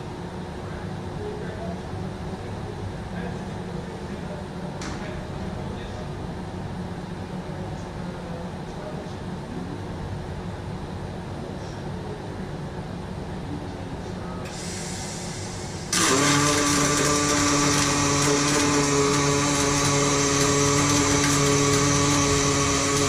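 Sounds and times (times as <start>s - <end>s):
low machine noise: 0.0s - 23.0s
loud hiss with hums and whines: 14.4s - 23.0s.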